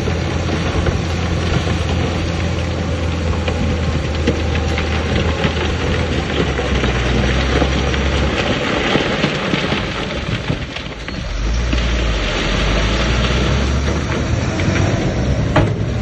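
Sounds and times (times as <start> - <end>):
heavy diesel engine running: 0.0 - 16.0
stones crackling and rattling: 0.0 - 16.0.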